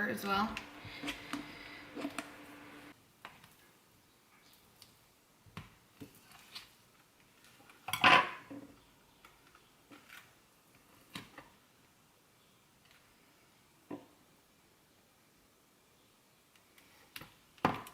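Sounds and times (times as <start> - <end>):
dishes and cutlery clinking: 7.9 - 8.5.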